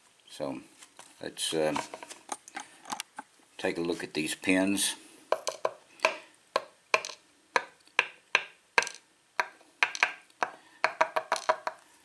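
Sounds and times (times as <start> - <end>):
small metal pins clicking: 5.3 - 11.8.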